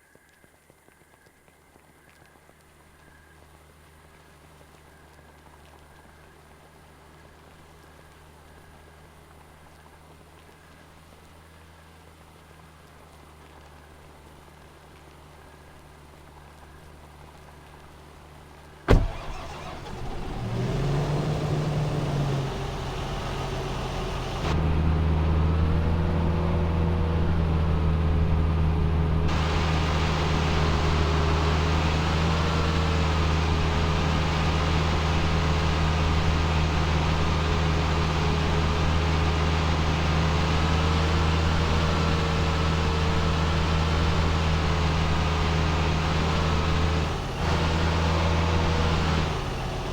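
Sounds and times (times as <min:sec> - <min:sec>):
engine starting and running: 0:18.9 - 0:25.2, 0:29.3 - 0:49.9.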